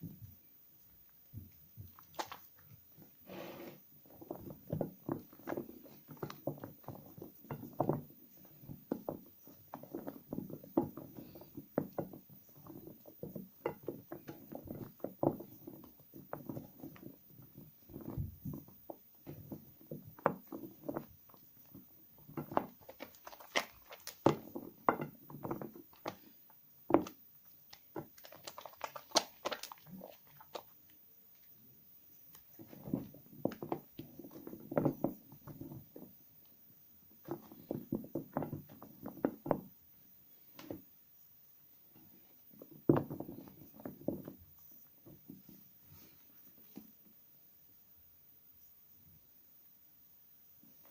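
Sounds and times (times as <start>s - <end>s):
wet soap squelching by hand: 1.9s - 3.2s, 22.6s - 24.5s, 27.0s - 31.5s.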